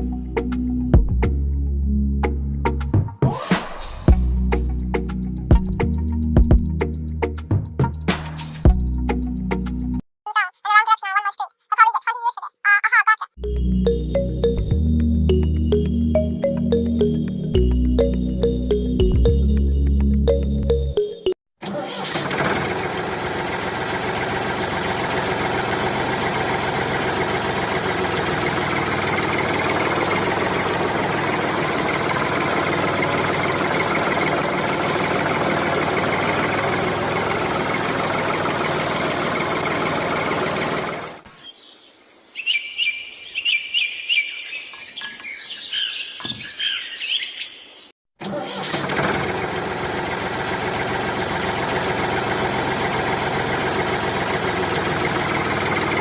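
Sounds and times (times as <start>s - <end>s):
mini tractor engine running: 21.6s - 41.2s, 48.2s - 56.0s
birds chirping: 41.3s - 47.9s.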